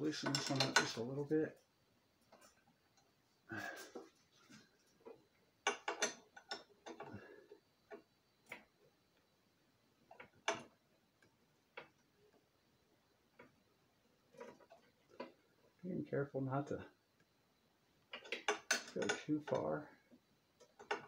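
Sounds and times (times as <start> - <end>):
hand tools clicking on metal: 18.2 - 19.7.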